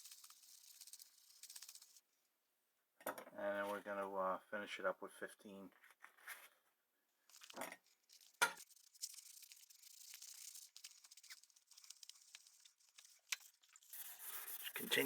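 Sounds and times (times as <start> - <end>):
sandpaper rasping on knife blade: 13.9 - 15.0.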